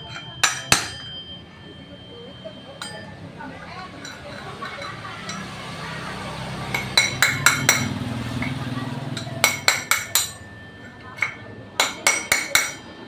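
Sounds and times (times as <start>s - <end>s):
hammer striking metal: 0.0s - 1.2s, 6.6s - 13.0s.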